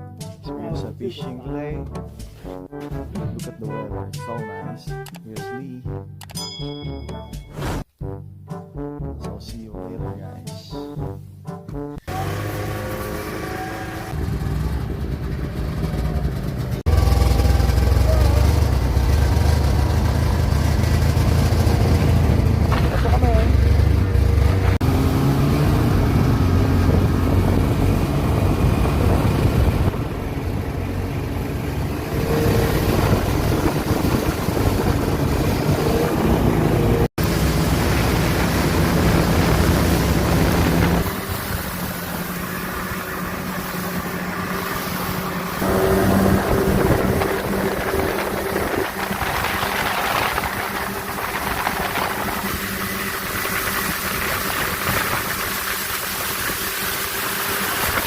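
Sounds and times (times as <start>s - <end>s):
vehicle engine running: 12.0s - 58.0s
wind buffeting microphone: 25.4s - 44.0s, 44.6s - 56.6s.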